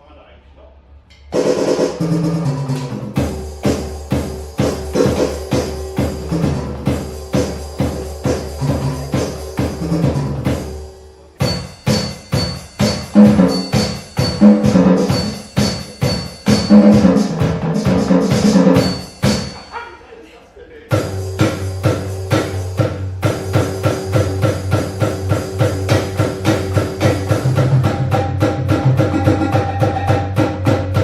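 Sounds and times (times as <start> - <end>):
electronic drum beat: 1.3 - 19.9, 20.9 - 31.0
thin high ringing tone: 10.7 - 17.0, 18.8 - 19.9.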